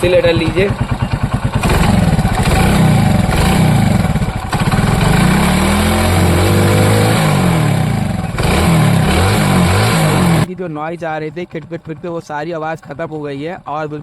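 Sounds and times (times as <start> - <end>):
motorcycle engine revving: 0.0 - 13.2.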